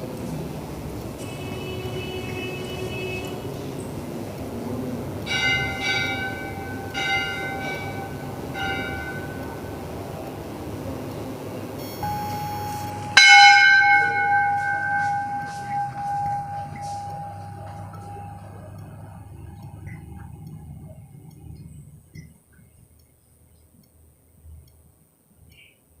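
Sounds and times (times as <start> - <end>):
low background noise: 0.0 - 26.0
loud bell strike ringing on: 5.2 - 10.2, 12.0 - 19.2
temple bells rung by hand: 5.2 - 10.5, 12.0 - 19.8.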